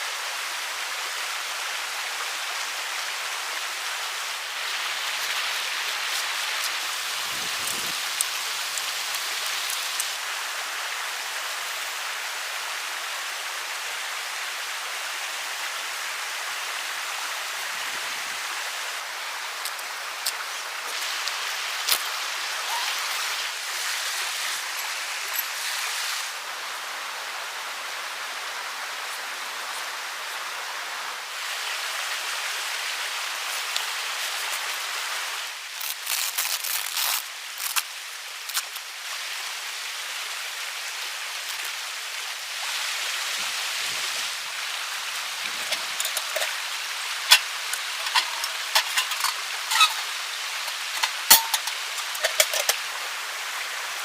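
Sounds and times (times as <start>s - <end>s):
rain hissing: 0.0s - 54.0s.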